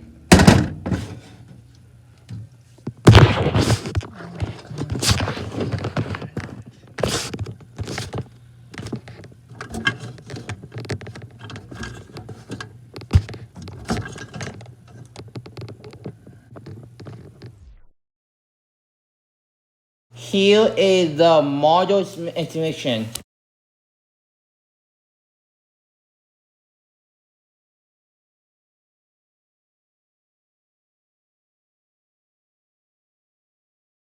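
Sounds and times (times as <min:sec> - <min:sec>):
low steady hum: 0:00.0 - 0:17.8.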